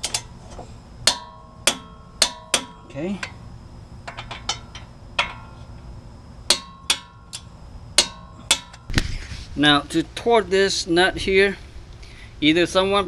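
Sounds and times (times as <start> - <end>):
metal tools knocking on steel: 1.1 - 3.4, 4.0 - 5.6.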